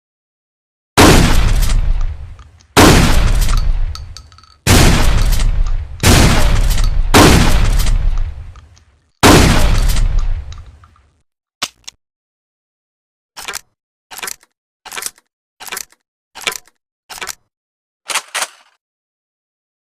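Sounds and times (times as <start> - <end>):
shotgun shots echoing: 1.0 - 10.9
gun action clacking: 3.3 - 4.6, 5.2 - 7.0, 13.4 - 17.5, 18.1 - 18.8.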